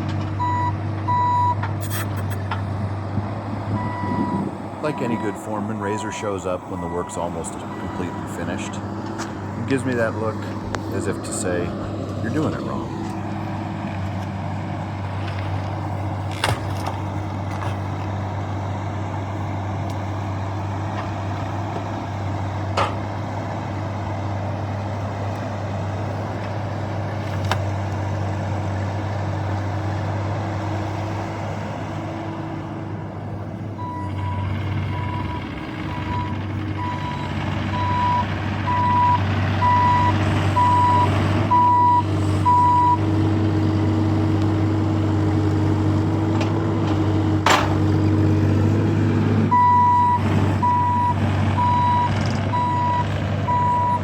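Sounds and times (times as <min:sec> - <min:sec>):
diesel engine running: 0:00.0 - 0:54.0
travel alarm beeping: 0:00.4 - 0:02.0, 0:33.8 - 0:43.0, 0:49.5 - 0:54.0.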